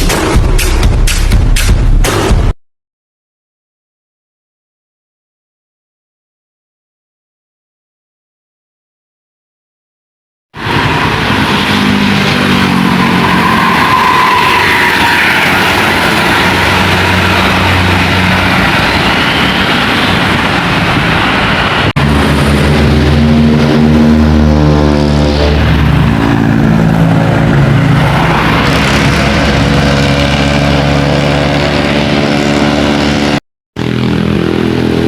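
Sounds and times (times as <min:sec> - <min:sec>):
bus diesel engines passing: 0:10.6 - 0:35.0
bus engine droning: 0:10.6 - 0:35.0
tyre and road noise: 0:10.6 - 0:35.0.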